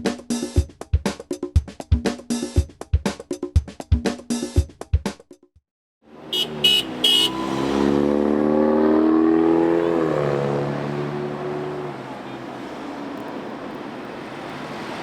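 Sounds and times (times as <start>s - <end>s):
vehicle driving by: 6.1s - 15.0s
short high horn toots: 6.3s - 7.7s.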